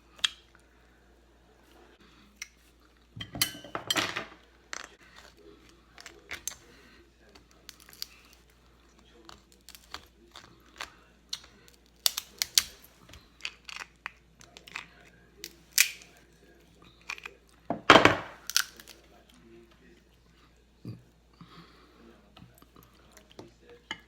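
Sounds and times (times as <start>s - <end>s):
shells cracking and peeling: 4.7s - 16.2s, 18.3s - 19.1s.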